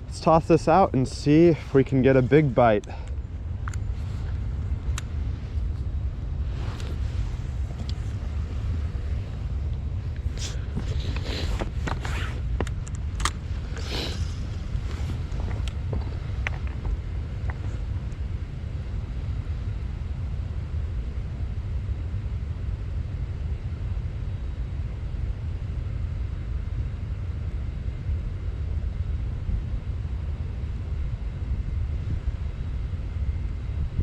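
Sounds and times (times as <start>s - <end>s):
wind on microphone: 3.4s - 19.8s, 28.6s - 34.0s.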